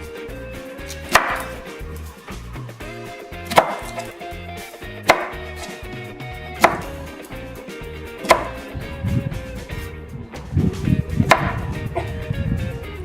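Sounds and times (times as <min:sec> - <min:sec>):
knife chopping on cutting board: 0:00.8 - 0:02.1, 0:03.4 - 0:04.2, 0:05.0 - 0:05.8, 0:06.6 - 0:07.0, 0:08.2 - 0:08.7, 0:11.2 - 0:11.7.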